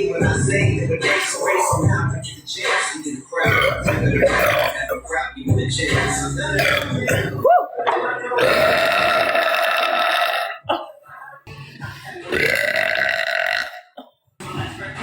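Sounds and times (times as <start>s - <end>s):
woman belching loudly: 3.4s - 5.1s, 6.6s - 7.5s, 8.4s - 10.9s, 12.3s - 14.0s.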